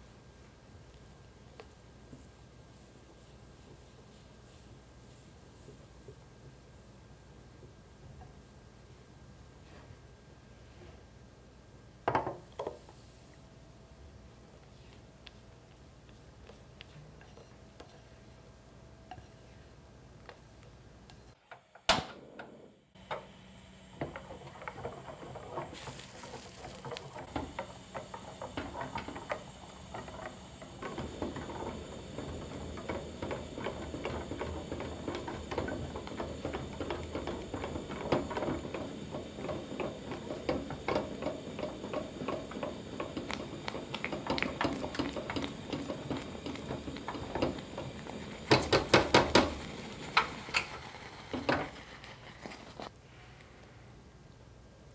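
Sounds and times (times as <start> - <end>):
utensil stirring in a bowl: 24.0 - 52.9.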